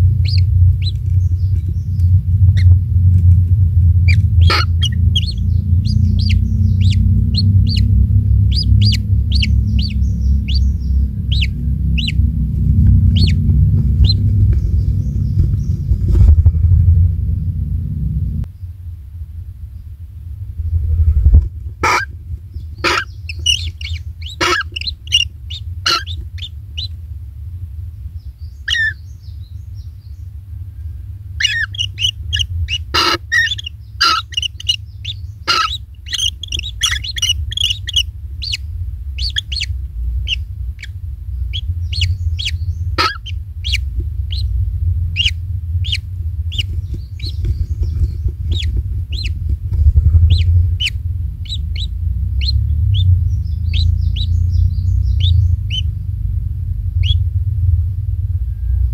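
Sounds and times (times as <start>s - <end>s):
kingfisher chirping: 0.0s - 2.8s, 4.0s - 15.9s, 21.8s - 26.9s, 28.2s - 30.2s, 31.4s - 44.5s, 45.1s - 49.4s, 50.2s - 56.1s, 57.0s - 57.3s
low rumble: 0.0s - 58.9s.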